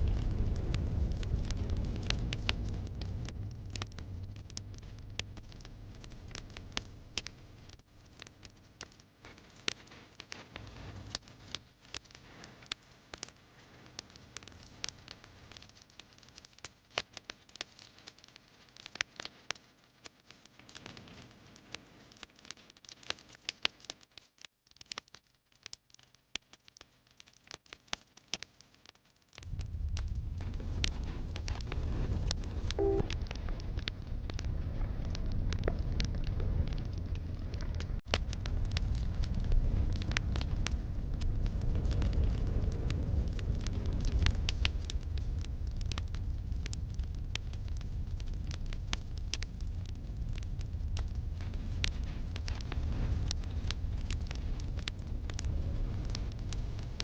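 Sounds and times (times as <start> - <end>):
low rumble: 0.0 - 7.2, 29.5 - 48.6
wood fire crackling and popping: 0.0 - 57.0.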